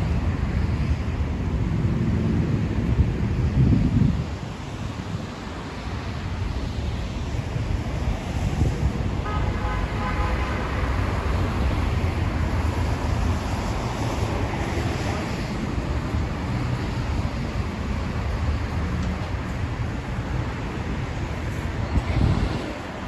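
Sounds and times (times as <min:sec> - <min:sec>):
street traffic: 0:00.0 - 0:23.0
wind on microphone: 0:00.0 - 0:23.0.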